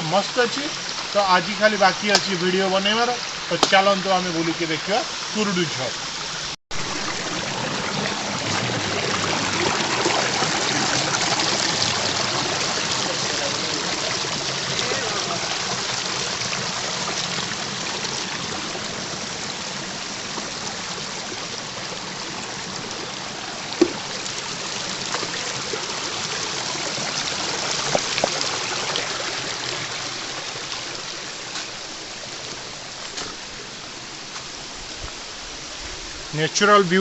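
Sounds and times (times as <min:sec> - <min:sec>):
stream water rushing: 0:00.0 - 0:37.0.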